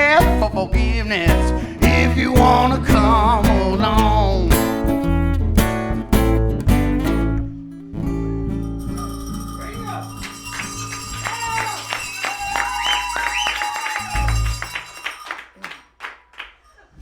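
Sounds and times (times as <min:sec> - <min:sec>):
acoustic guitar strummed chords: 0:00.0 - 0:15.2.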